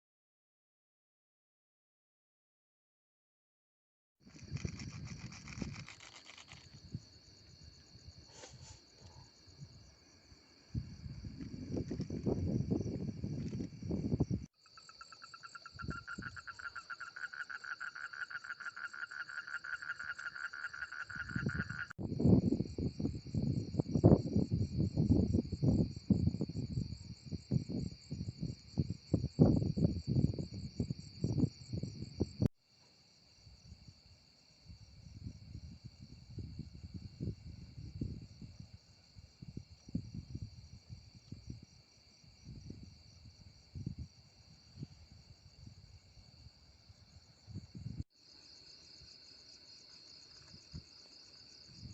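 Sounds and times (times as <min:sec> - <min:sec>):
crickets and insects chirring: 0:04.2 - 0:51.9
fast pulsed insect trill: 0:04.3 - 0:32.4.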